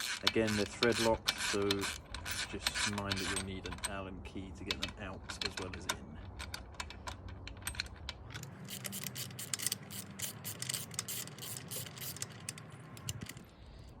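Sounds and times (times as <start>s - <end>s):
allen key clicking on bolts: 0.0s - 13.5s.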